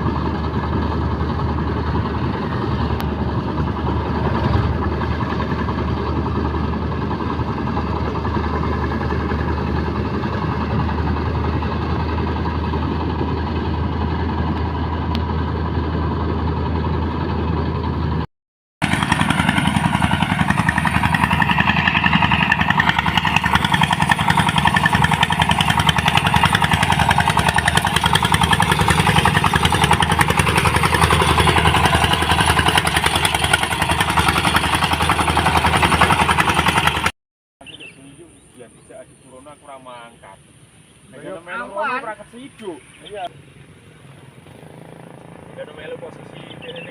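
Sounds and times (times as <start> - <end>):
threshing machine engine running: 0.0 - 37.1.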